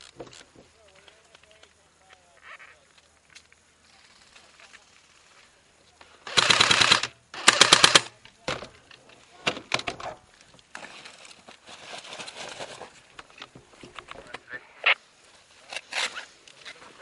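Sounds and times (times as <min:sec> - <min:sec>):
airsoft gun full-auto bursts: 0:06.2 - 0:08.1.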